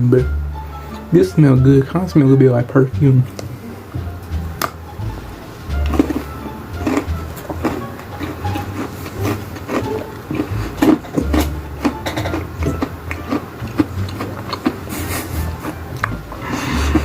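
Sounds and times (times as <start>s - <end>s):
crunchy cookie being chewed: 5.8s - 17.0s.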